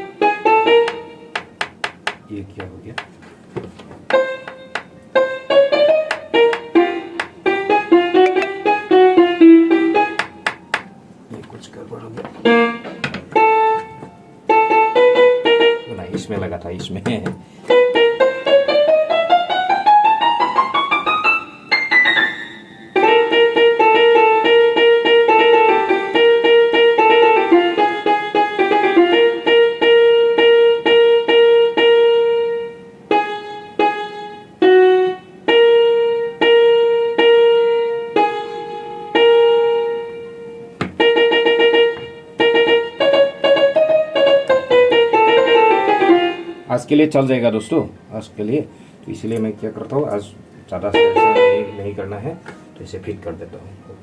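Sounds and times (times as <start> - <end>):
keyboard playing piano sound: 0.0 - 48.0, 49.2 - 54.0.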